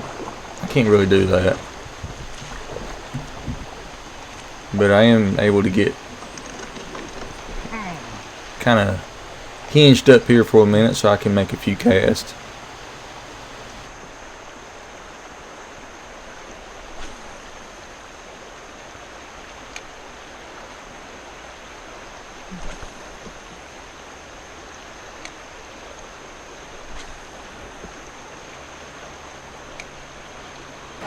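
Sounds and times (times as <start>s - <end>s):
river rapids rushing: 0.0s - 13.9s.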